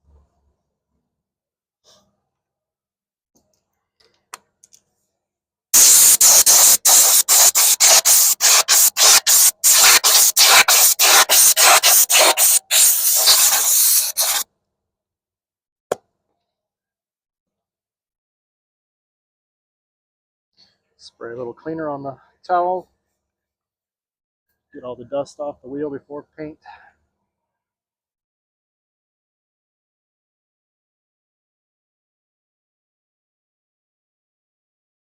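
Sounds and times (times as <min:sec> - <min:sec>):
scuff pad scrubbing metal wheel: 0:05.8 - 0:14.4.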